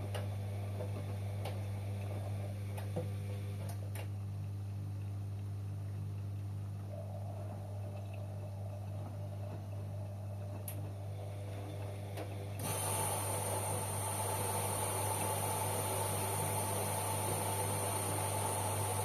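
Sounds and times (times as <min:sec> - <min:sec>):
washing machine humming: 0:00.0 - 0:19.0
water hissing into machine: 0:12.6 - 0:19.0.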